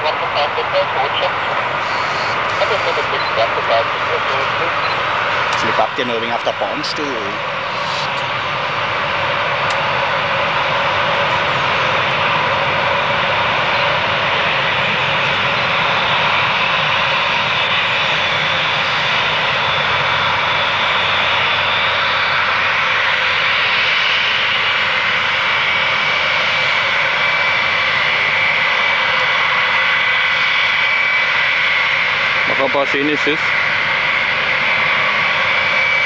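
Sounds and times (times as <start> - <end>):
jet engines running: 0.0 - 36.0.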